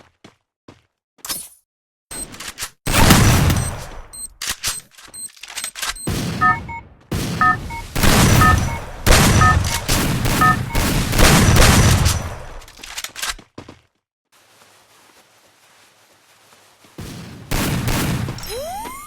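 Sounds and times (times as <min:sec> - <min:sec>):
short high beeps: 0:05.9 - 0:06.8, 0:07.4 - 0:11.1, 0:18.5 - 0:19.0
video game automatic gunfire: 0:06.1 - 0:12.7.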